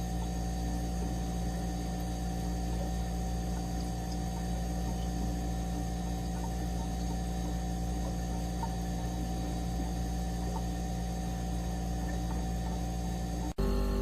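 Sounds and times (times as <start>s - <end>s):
electronic drone of held tones: 4.6s - 14.0s.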